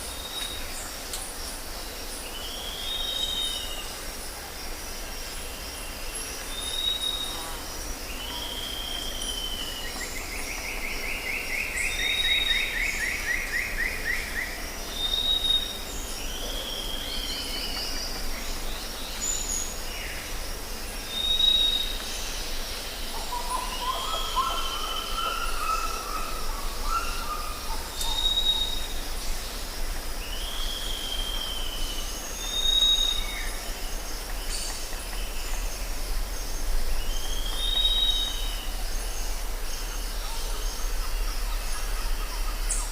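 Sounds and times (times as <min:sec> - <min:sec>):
insect drone: 0:00.0 - 0:42.9.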